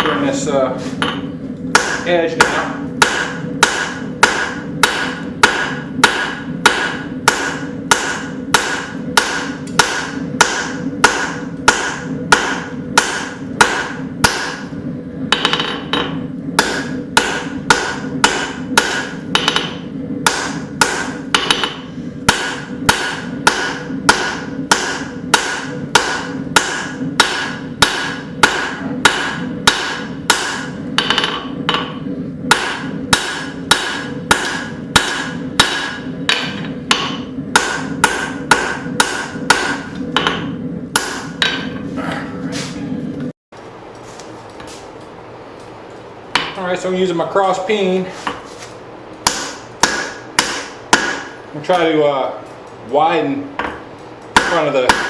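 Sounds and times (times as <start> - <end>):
hammer striking metal on anvil: 1.0 - 14.7, 15.3 - 41.8, 46.4 - 46.6, 49.2 - 51.4, 54.4 - 55.0.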